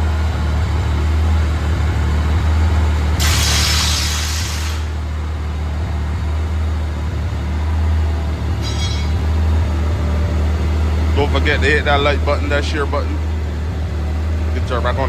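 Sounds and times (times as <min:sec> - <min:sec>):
low mechanical drone: 0:00.0 - 0:15.0
air hiss: 0:03.2 - 0:05.3.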